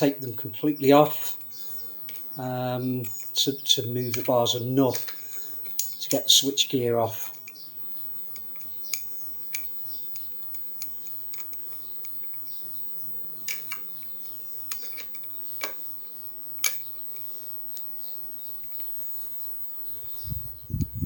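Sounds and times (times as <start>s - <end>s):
metallic clicks from hand tools: 4.0s - 6.5s.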